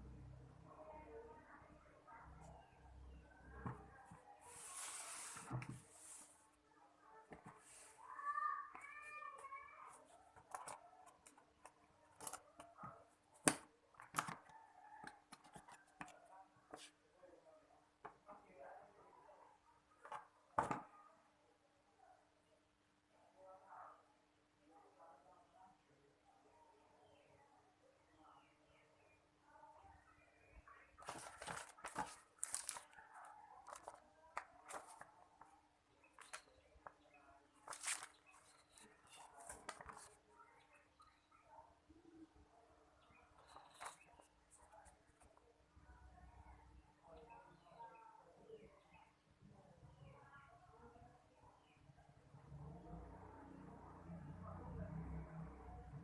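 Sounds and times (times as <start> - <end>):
packaging crinkling and rustling: 31.0 - 35.1, 37.6 - 40.2.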